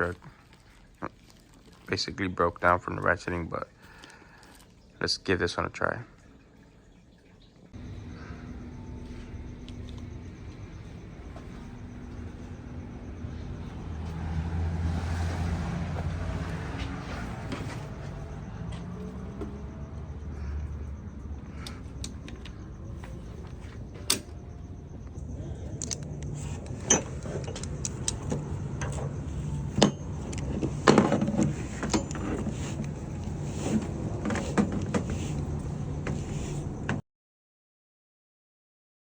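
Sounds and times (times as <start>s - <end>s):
steady low hum: 7.8s - 37.0s
ratchet strap clicking and clinking: 25.7s - 29.0s.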